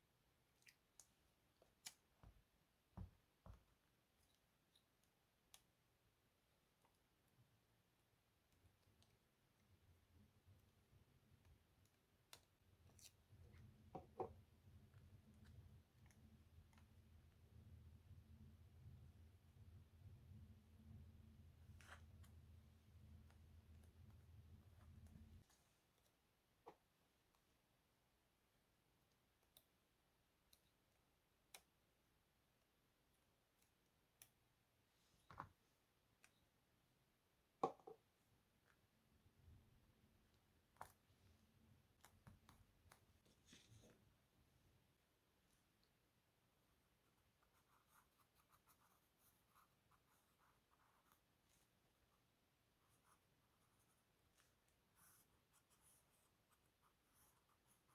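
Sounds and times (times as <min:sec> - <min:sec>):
low steady hum: 0:08.3 - 0:25.5.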